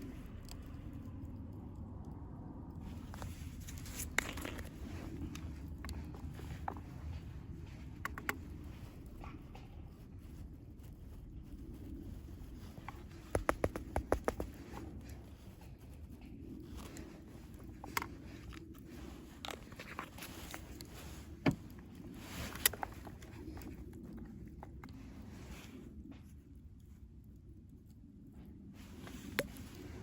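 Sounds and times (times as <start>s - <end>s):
low steady background noise: 0.0s - 30.0s
sharp clicking and tapping: 13.2s - 14.6s.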